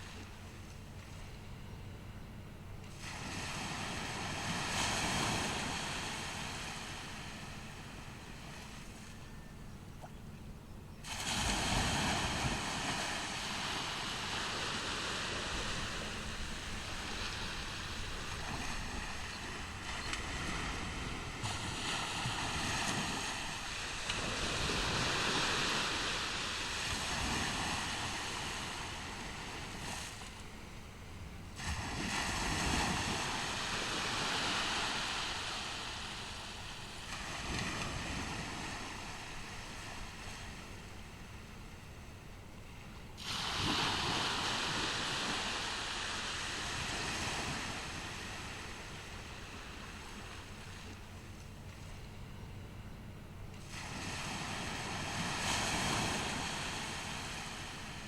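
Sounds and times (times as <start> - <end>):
ocean surf breaking on beach: 2.8 - 9.2, 11.0 - 42.0, 43.1 - 52.0, 53.5 - 58.0.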